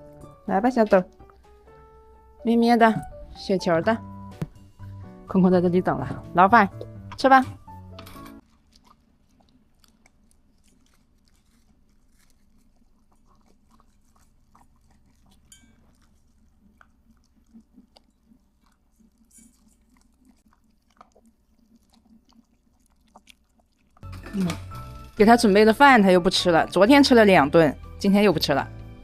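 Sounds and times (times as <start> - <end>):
dogs chewing and crunching: 0.0 - 2.3, 6.7 - 26.3.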